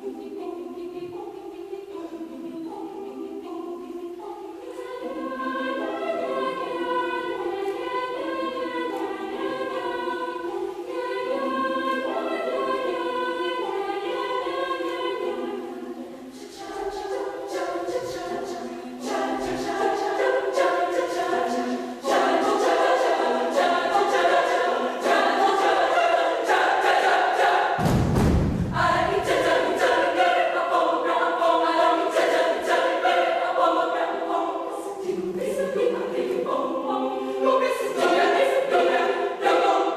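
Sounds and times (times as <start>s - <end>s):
choir singing a cappella: 0.0s - 27.8s, 28.7s - 39.9s
low thud: 27.8s - 29.6s.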